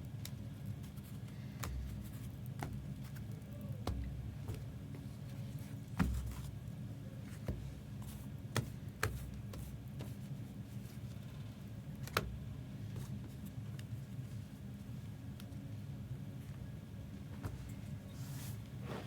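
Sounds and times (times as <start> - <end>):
steady low hum: 15.7 - 19.0.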